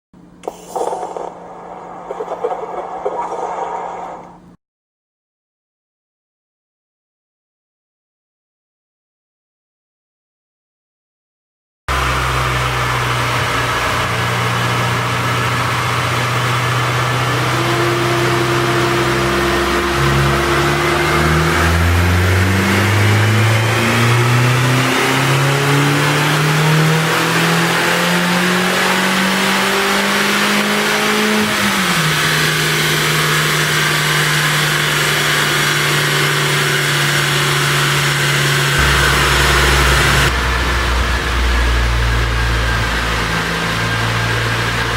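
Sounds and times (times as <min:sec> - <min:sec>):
turbocharged car engine revving: 0:11.9 - 0:44.9.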